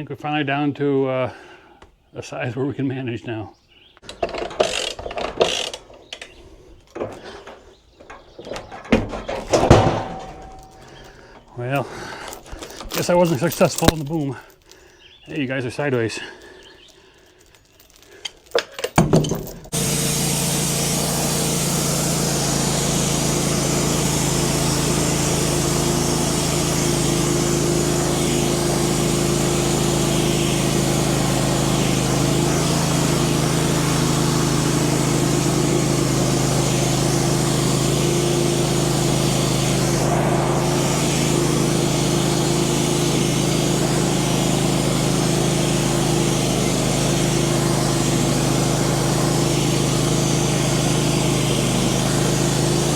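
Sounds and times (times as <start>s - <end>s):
chainsaw cutting through log: 19.7s - 52.9s.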